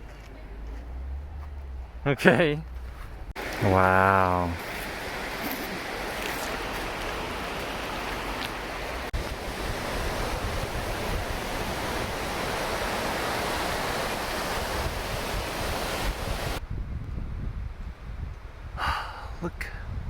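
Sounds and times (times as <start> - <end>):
rushing outdoor noise: 0.0 - 19.9
wind buffeting microphone: 4.6 - 20.0.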